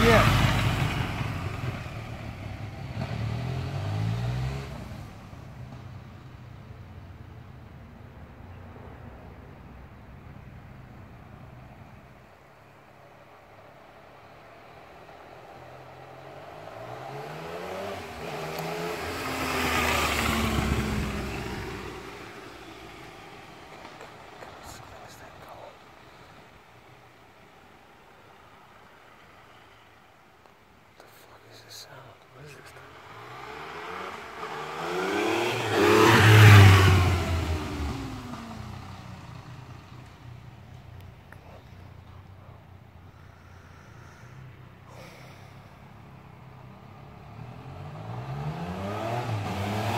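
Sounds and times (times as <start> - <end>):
motorcycle engine accelerating: 0.0 - 6.3, 16.7 - 24.1, 33.0 - 40.2, 47.0 - 49.9.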